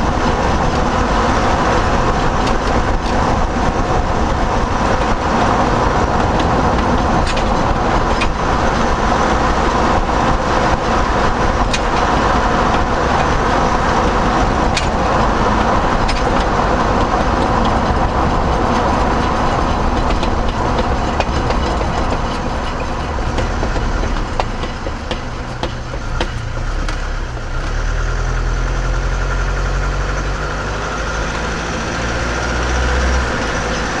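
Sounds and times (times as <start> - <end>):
low engine hum: 0.0 - 34.0
road and tyre noise: 0.0 - 34.0.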